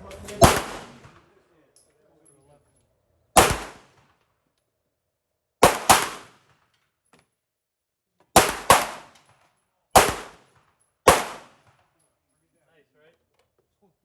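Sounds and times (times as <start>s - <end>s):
pistol shots with echo: 0.4s - 1.3s, 3.4s - 4.0s, 5.6s - 6.5s, 8.4s - 9.2s, 10.0s - 11.6s.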